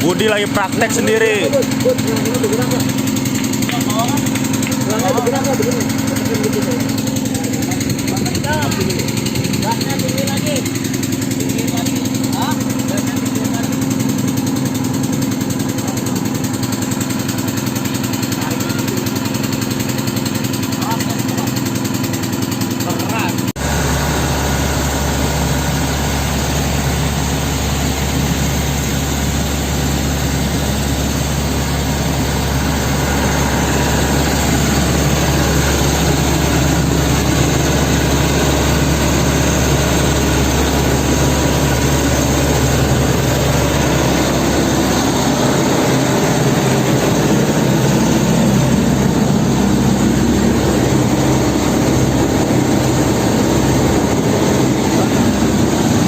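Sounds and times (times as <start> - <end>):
pump engine running with deep hum: 0.0 - 56.0.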